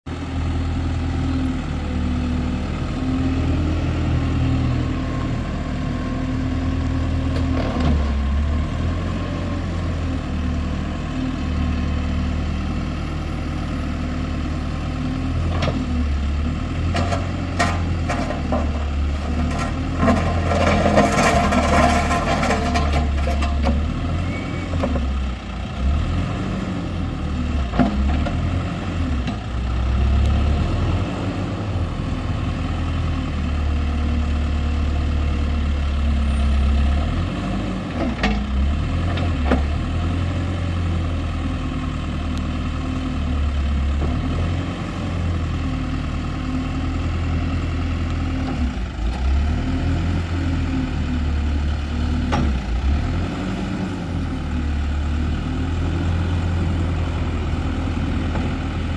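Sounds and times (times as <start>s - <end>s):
diesel engine idling: 0.1s - 7.4s, 39.8s - 58.9s.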